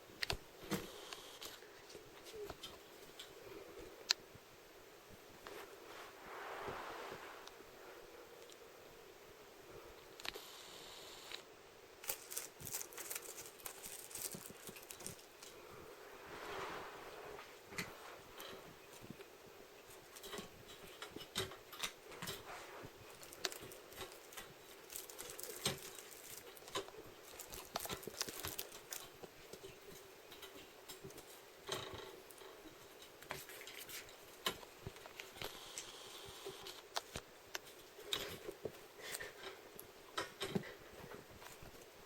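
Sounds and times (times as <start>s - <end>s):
kittens' paws tapping and scratching: 12.0s - 15.6s, 17.7s - 35.6s.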